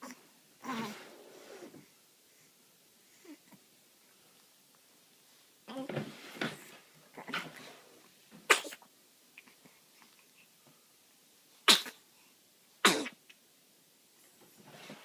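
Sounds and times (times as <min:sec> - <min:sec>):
soft snuffling: 0:00.0 - 0:03.6
pet sneezing: 0:08.5 - 0:08.9, 0:11.6 - 0:12.0, 0:12.8 - 0:13.2.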